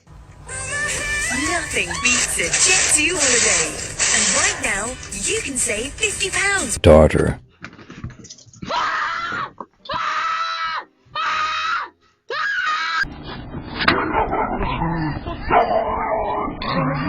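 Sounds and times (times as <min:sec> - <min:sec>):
dense jumble of noise: 0:00.0 - 0:07.0.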